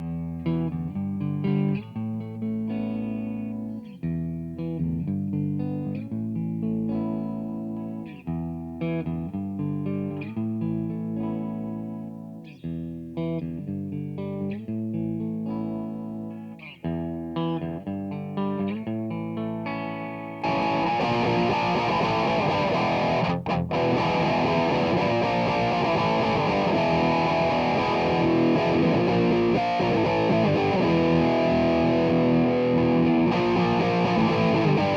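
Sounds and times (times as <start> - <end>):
distorted electric guitar: 18.4 - 34.9
clean electric guitar notes: 19.4 - 34.9.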